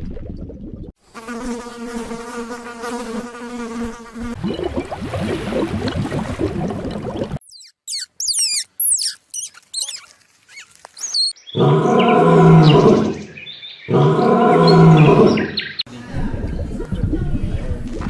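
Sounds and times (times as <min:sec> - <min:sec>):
bird chirping: 0:07.4 - 0:15.9
large animal low calls: 0:11.6 - 0:13.3, 0:13.9 - 0:15.6.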